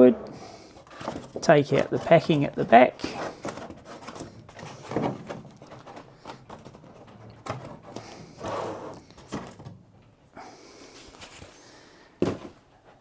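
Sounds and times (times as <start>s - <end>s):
packing handling clicks and knocks: 0.0s - 13.0s.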